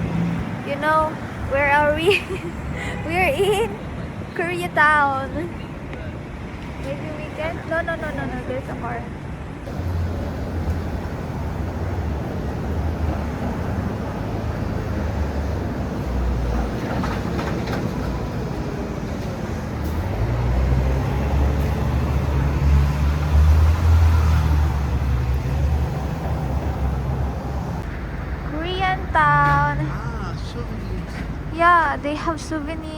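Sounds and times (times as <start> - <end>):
street traffic rumble: 0.0 - 32.9
vehicle passing by: 9.7 - 31.5.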